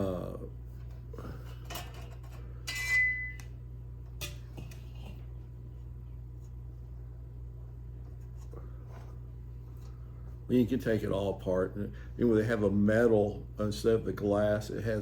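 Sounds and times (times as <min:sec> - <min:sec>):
steady low hum: 0:00.0 - 0:15.0
metal lantern parts clinking: 0:01.4 - 0:03.4.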